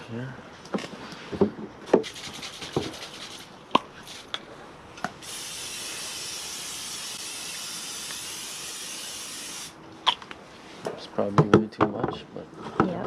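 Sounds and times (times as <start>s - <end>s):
aerosol spray can hissing: 2.0s - 3.5s, 5.2s - 9.8s.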